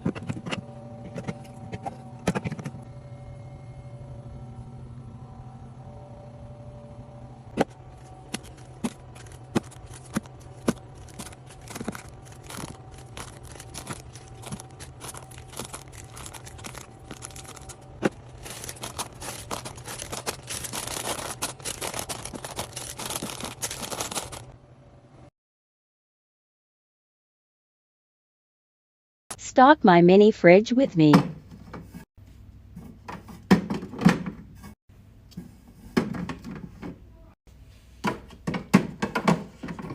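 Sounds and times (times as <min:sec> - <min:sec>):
packaging crinkling and tearing: 0:08.0 - 0:24.5.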